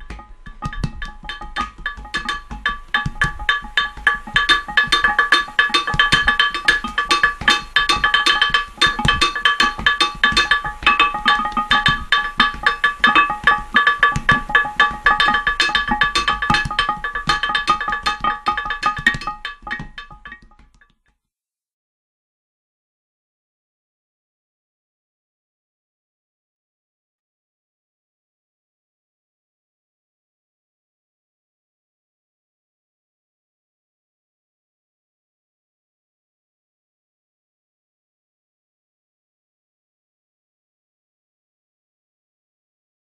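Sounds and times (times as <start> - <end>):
stones struck as percussion: 0.0 - 20.9.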